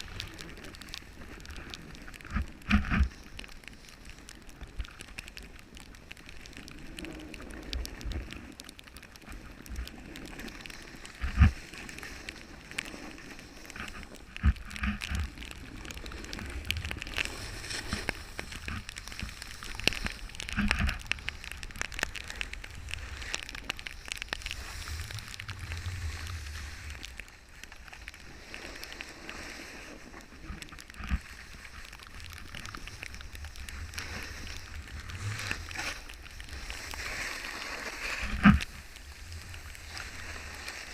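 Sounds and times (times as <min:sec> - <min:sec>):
snowboard scraping over snow: 0:15.0 - 0:20.3, 0:22.9 - 0:31.9, 0:32.8 - 0:40.9.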